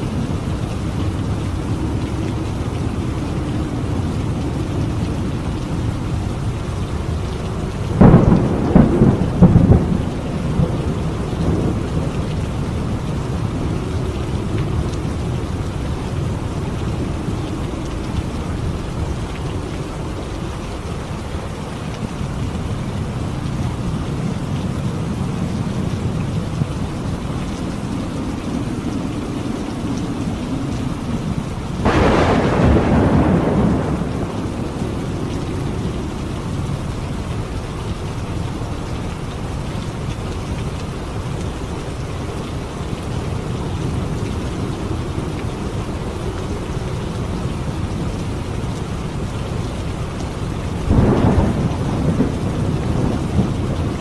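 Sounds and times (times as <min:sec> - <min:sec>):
distant thunder rumble: 0:00.0 - 0:38.2, 0:50.7 - 0:54.0
heavy rain: 0:00.0 - 0:54.0.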